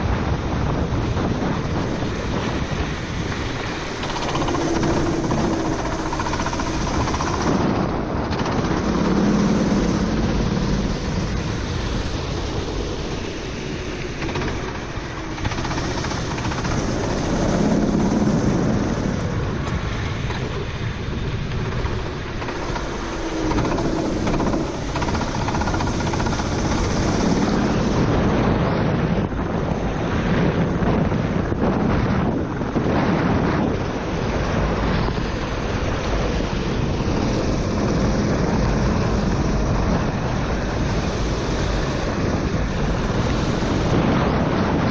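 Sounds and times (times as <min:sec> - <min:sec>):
wind noise: 0:00.0 - 0:44.9
kart engine revving: 0:03.5 - 0:11.6
water spray: 0:08.8 - 0:19.3, 0:22.4 - 0:28.1, 0:35.3 - 0:44.2.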